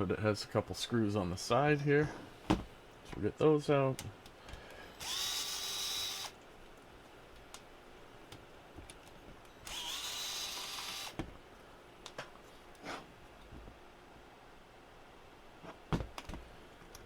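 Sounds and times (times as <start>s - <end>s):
electric screwdriver whining: 5.0s - 6.4s, 9.6s - 11.2s.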